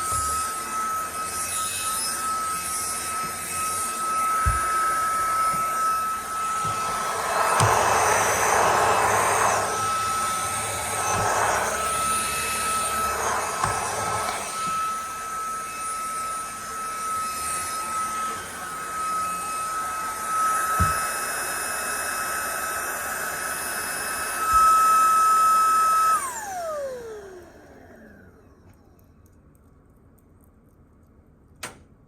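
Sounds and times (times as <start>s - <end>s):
vacuum cleaner whining: 0.0s - 29.1s
short thumps: 4.4s - 4.8s.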